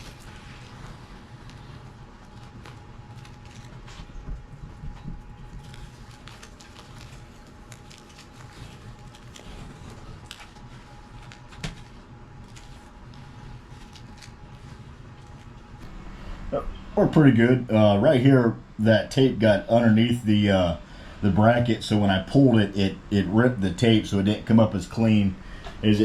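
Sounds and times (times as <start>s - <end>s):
tape peeling crackles: 0.0s - 16.0s.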